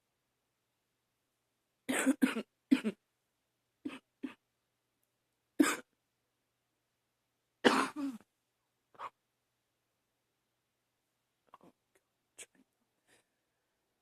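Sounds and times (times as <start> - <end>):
woman coughing: 1.9 - 3.0, 5.6 - 5.9, 7.6 - 8.2.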